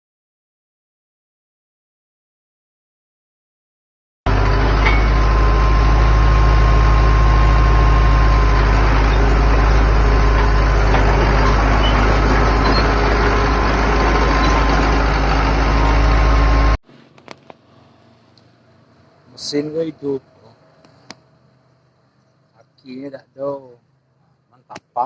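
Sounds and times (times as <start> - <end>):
bulldozer diesel engine running: 4.3 - 22.5.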